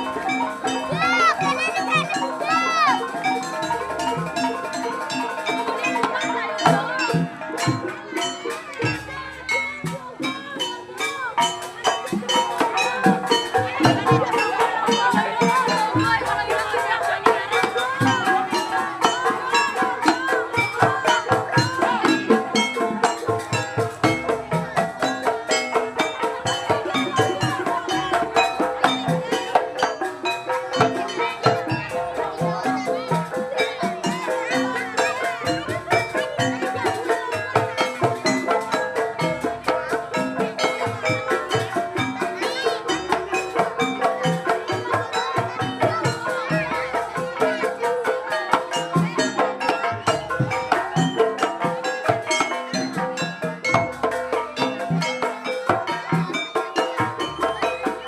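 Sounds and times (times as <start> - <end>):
drums in a fast beat: 0.0 - 58.0
gongs and metallophones ringing: 0.0 - 58.0
tuned metal percussion: 0.0 - 58.0.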